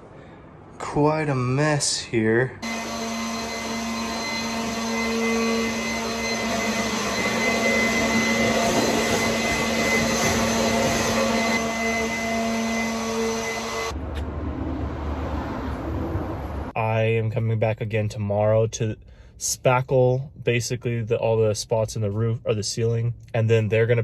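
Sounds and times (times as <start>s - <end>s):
vacuum cleaner running: 2.6s - 14.0s.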